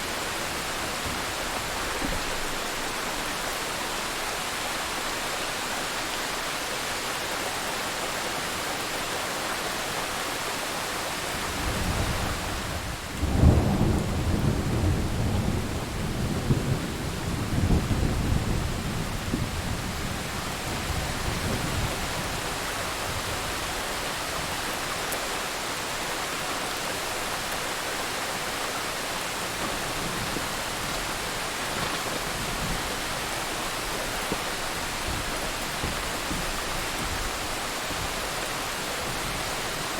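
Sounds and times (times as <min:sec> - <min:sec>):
heavy rain hissing: 0:00.0 - 0:39.9
thunderclap rumbling: 0:11.5 - 0:22.4, 0:29.3 - 0:39.9.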